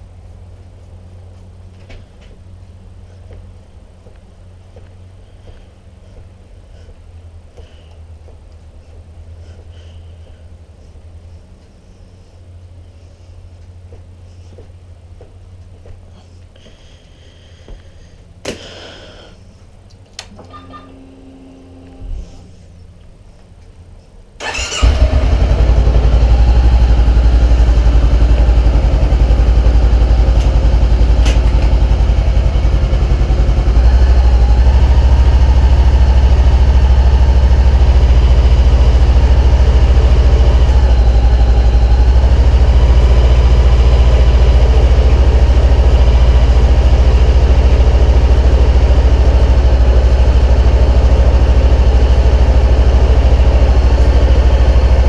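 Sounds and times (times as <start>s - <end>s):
motorcycle engine cranking: 24.4s - 26.8s
motorcycle engine idling: 24.4s - 55.0s.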